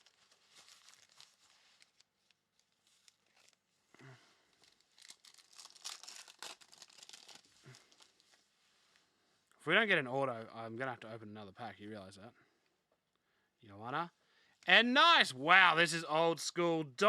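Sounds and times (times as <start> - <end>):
foil wrapper tearing and crinkling: 0.0 - 3.6, 4.5 - 8.2.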